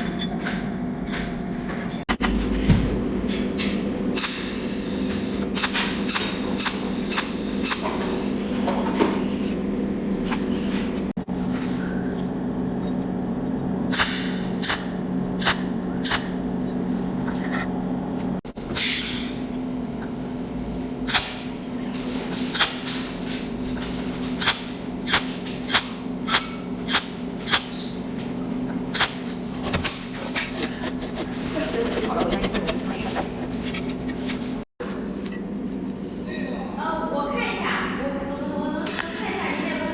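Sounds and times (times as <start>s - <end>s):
welding arc zaps: 5.5s - 8.0s, 13.9s - 16.4s, 21.0s - 21.5s, 22.2s - 27.9s, 28.9s - 32.2s.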